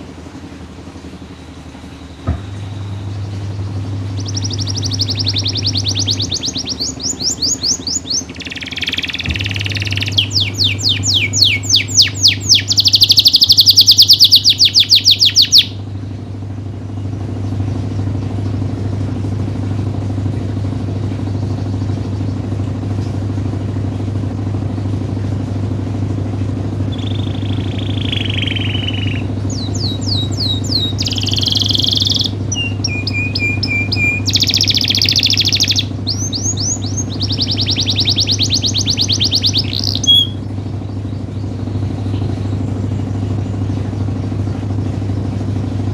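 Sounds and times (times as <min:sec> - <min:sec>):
steady low hum: 0:00.0 - 0:45.9
canary singing trills: 0:01.0 - 0:15.9, 0:26.8 - 0:44.6.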